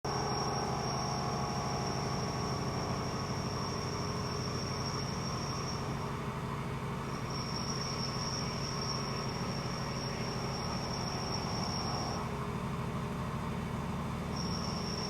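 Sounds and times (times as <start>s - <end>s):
high-pitched machine whine: 0.1s - 15.0s
low machine hum: 0.1s - 15.0s.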